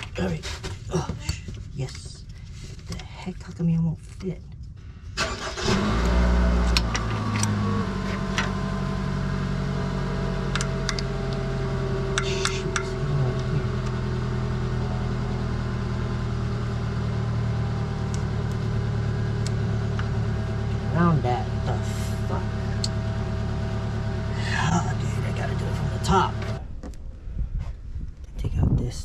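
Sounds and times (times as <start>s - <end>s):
car engine idling: 5.1s - 26.8s.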